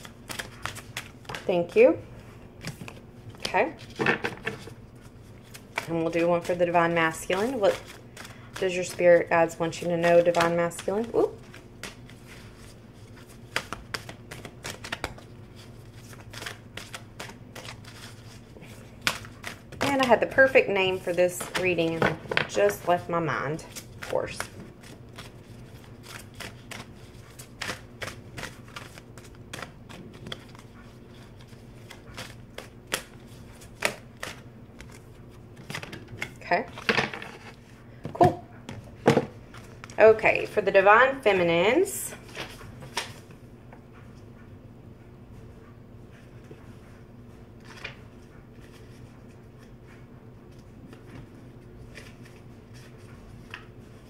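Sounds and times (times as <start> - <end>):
cards being shuffled: 0.0 - 1.8, 2.6 - 37.7, 47.6 - 54.0
faint steady hum: 0.0 - 54.0.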